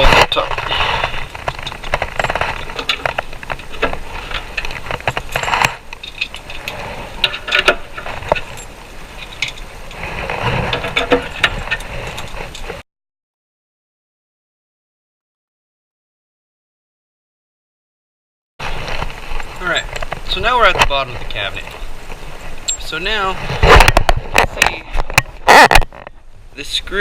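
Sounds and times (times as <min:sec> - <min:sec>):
metal cam locks rattling and clicking: 0:04.6 - 0:09.6.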